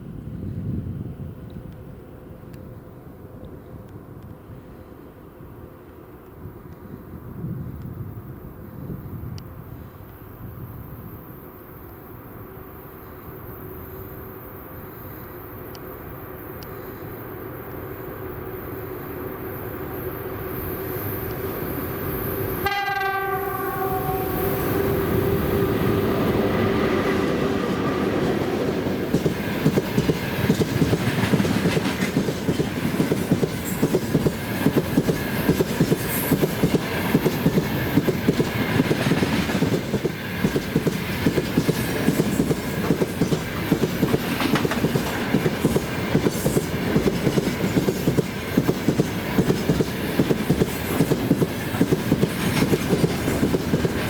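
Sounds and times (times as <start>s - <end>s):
rumble of train wagons: 0.0s - 54.0s
train horn: 22.5s - 28.1s.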